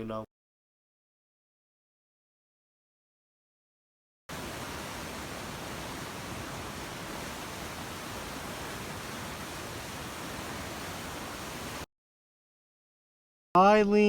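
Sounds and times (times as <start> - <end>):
static-like hiss: 4.3 - 11.8.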